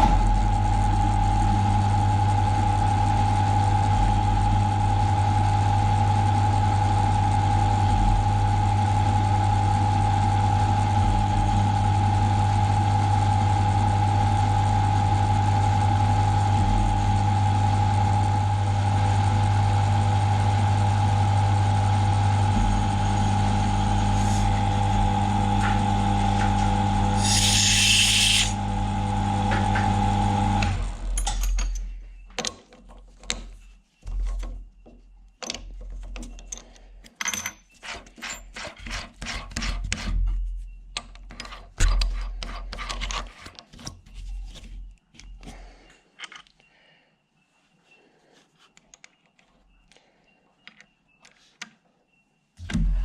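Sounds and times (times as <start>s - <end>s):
mill drill motor hum and whine: 0.0s - 31.3s.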